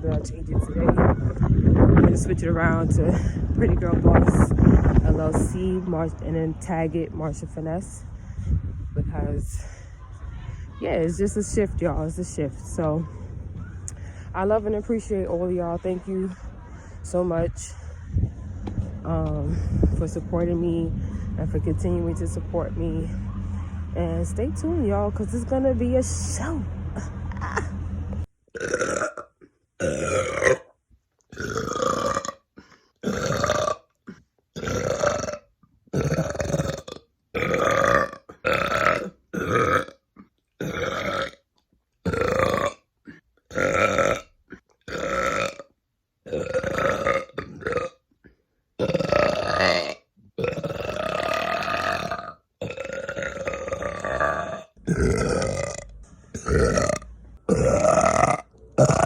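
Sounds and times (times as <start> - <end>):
woman burping loudly: 28.5 - 30.7, 31.3 - 41.4, 42.0 - 48.0, 48.8 - 59.0.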